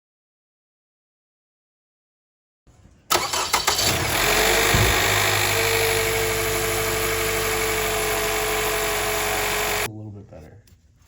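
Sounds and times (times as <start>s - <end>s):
car engine starting and idling: 3.1s - 9.9s.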